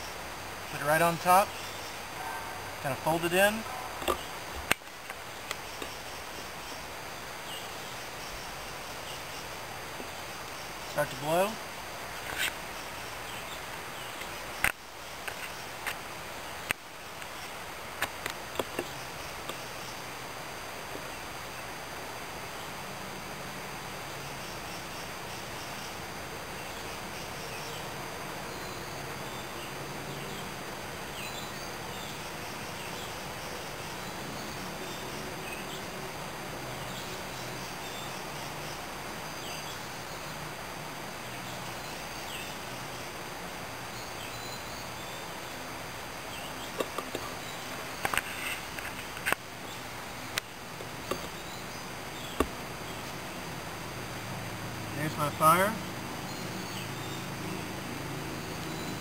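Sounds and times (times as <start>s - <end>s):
outdoor background hiss: 0.0s - 59.0s
bird chirps: 58.3s - 59.0s.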